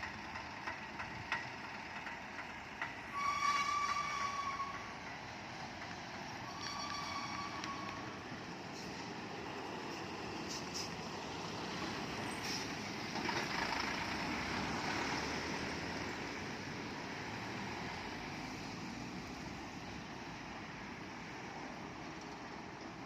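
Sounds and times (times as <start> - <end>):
heavy vehicle passing: 8.0 - 20.2.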